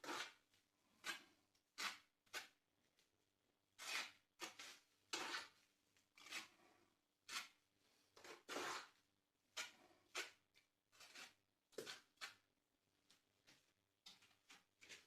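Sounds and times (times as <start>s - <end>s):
trowel scraping brick and mortar: 0.0s - 0.4s, 1.0s - 2.6s, 3.8s - 5.6s, 6.2s - 7.6s, 8.2s - 9.0s, 9.6s - 12.5s, 14.1s - 15.0s.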